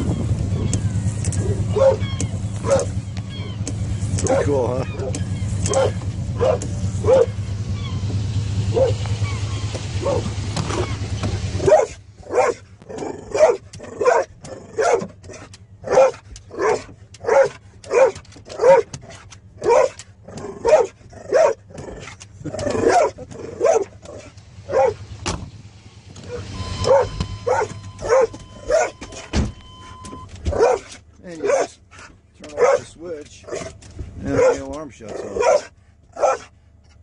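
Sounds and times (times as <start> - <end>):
dog barking: 1.7 - 2.0, 2.6 - 3.0, 4.2 - 7.4, 8.7 - 9.0, 10.0 - 10.3, 11.6 - 12.6, 13.3 - 15.1, 15.8 - 18.9, 19.6 - 20.0, 20.6 - 21.6, 22.7 - 25.0, 26.3 - 29.0, 30.5 - 31.8, 32.4 - 32.9, 33.5 - 36.5.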